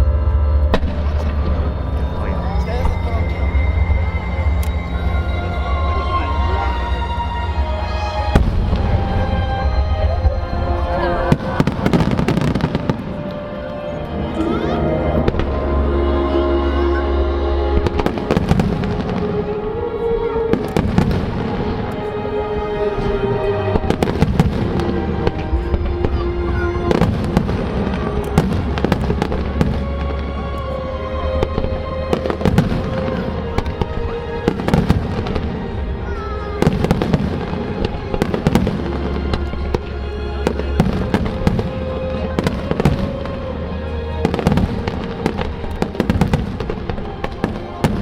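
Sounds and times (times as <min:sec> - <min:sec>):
music playing: 0:00.0 - 0:48.0
fireworks bursting and crackling: 0:11.2 - 0:13.9, 0:17.8 - 0:19.6, 0:20.5 - 0:22.2, 0:23.1 - 0:48.0.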